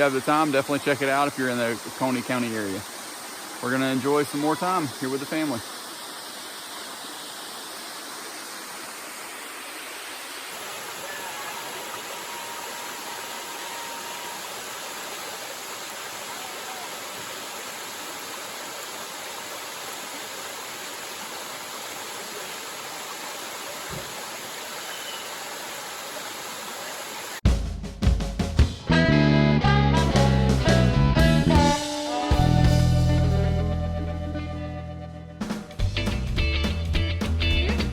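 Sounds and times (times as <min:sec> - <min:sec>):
waterfall rushing: 0:00.0 - 0:27.4.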